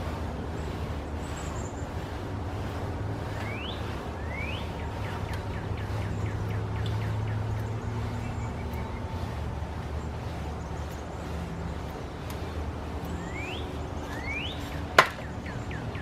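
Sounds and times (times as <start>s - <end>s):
songbird singing: 3.2s - 16.0s.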